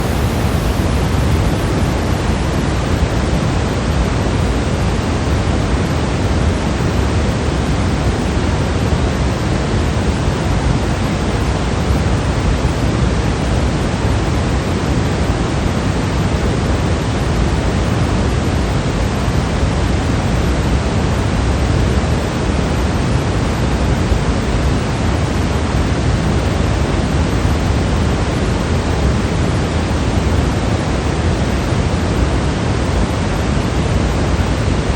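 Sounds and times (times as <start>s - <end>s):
white noise hiss: 0.0s - 34.9s.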